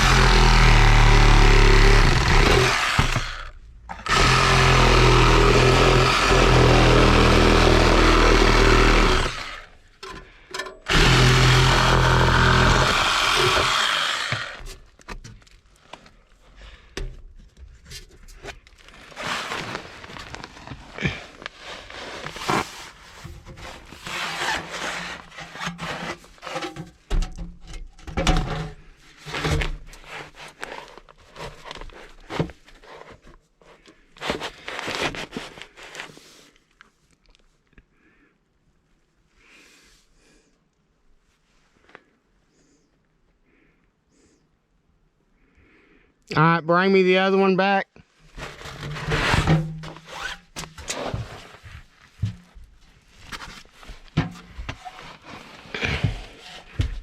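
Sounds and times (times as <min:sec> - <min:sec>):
reciprocating saw cutting: 0:00.0 - 0:09.7, 0:10.9 - 0:14.6
knocks and clatter of handling: 0:10.0 - 0:10.9, 0:25.4 - 0:28.8, 0:50.6 - 0:55.2.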